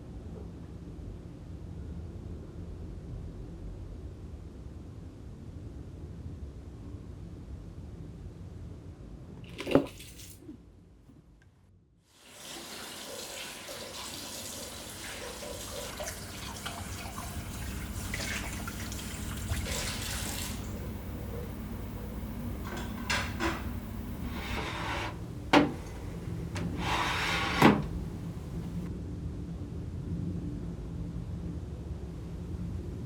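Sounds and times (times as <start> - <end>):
water running: 12.2 - 28.9.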